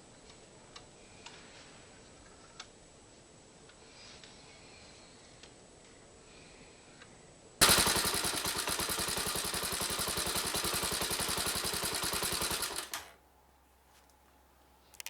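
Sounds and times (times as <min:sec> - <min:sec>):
motorcycle engine running: 0:07.6 - 0:13.2.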